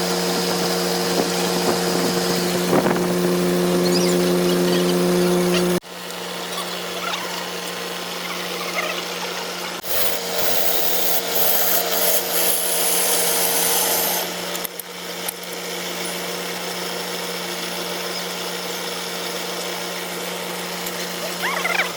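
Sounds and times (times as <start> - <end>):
tool scraping spinning wood: 0.0 - 14.7
lathe motor hum: 0.0 - 21.9.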